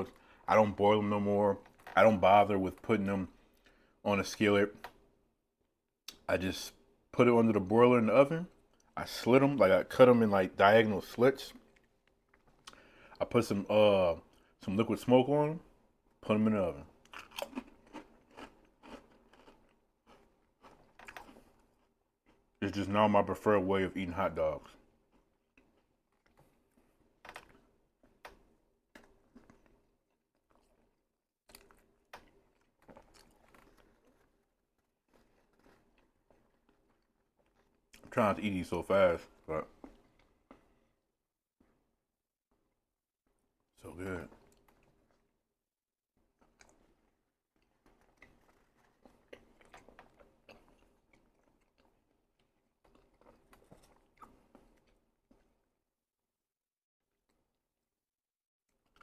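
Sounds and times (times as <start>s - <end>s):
man chewing food: 1.6s - 2.0s, 11.5s - 13.2s, 16.8s - 22.6s, 24.6s - 38.2s, 39.2s - 41.0s, 44.2s - 45.4s, 46.2s - 55.8s, 58.7s - 59.0s.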